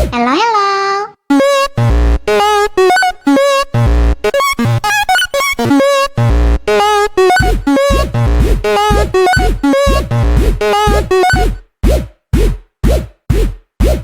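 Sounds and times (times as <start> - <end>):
electronic music with bell tones: 1.3 - 11.6
bass wobbles: 5.6 - 12.5
heavy bass hits: 7.4 - 14.0.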